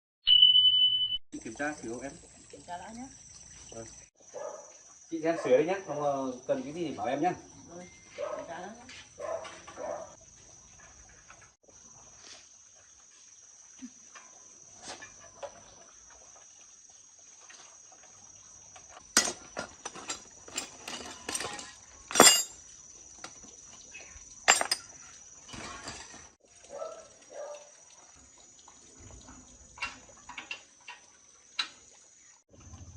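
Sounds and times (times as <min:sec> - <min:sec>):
crickets chirring: 0:01.4 - 0:32.9
metallic clinks and knocks: 0:19.2 - 0:22.6, 0:24.5 - 0:24.9.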